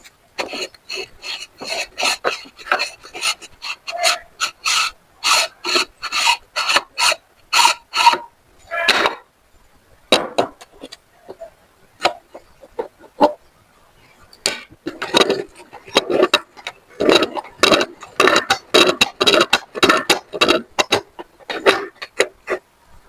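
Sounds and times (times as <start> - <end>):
meat grinder crunching pepper: 15.0 - 22.4.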